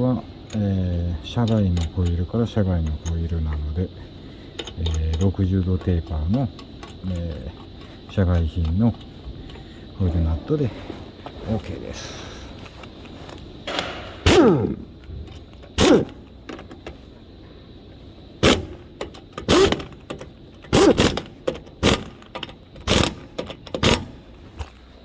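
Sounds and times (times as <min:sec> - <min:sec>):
impact wrench bursts: 0:12.7 - 0:17.1, 0:18.3 - 0:24.7.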